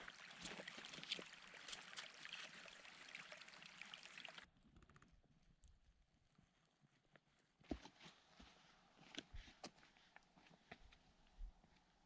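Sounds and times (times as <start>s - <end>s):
stream running water: 0.0s - 4.5s.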